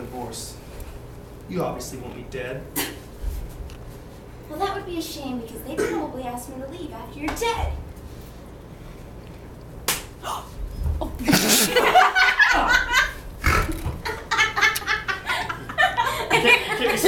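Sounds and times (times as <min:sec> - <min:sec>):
sharp slap: 0:09.8 - 0:10.2
people laughing: 0:11.2 - 0:17.0.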